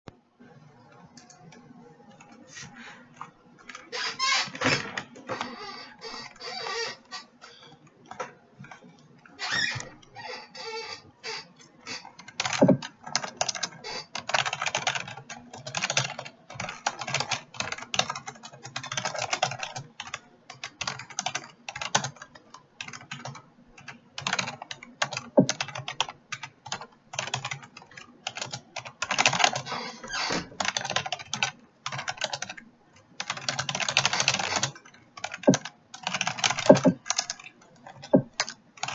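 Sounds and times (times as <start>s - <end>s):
computer keyboard typing: 0.9s - 2.4s, 7.5s - 10.1s, 11.8s - 29.7s, 30.6s - 38.9s.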